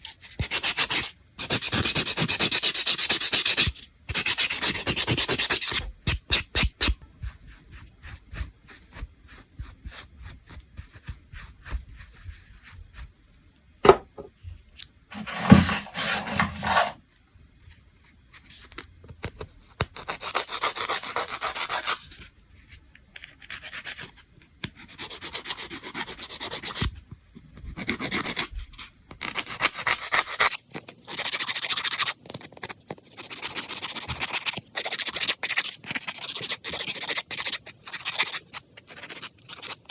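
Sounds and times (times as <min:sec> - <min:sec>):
nail file rubbing fingernails: 0:31.1 - 0:39.8.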